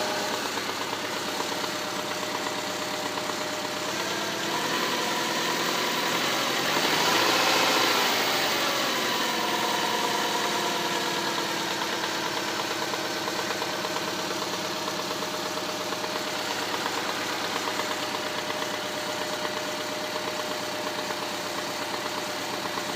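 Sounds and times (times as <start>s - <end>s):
car engine idling and revving: 0.0s - 22.9s
engine knock: 0.0s - 22.9s.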